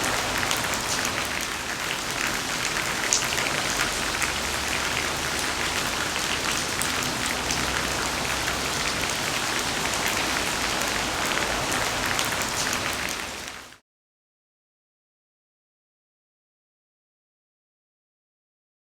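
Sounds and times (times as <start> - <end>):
raindrops ticking: 0.0 - 13.7
steady rain hissing: 0.0 - 13.8.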